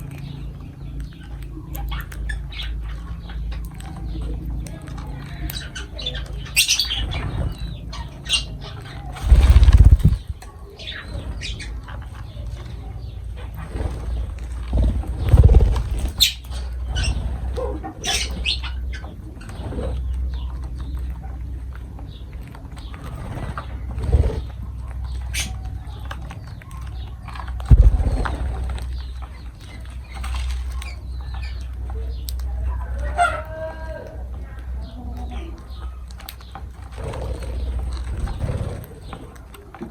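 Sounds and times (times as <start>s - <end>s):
lovebirds chirping: 0.0s - 32.9s
steady low rumble: 6.8s - 10.6s, 11.2s - 17.6s, 27.0s - 30.0s
sudden thumps: 9.2s - 10.4s.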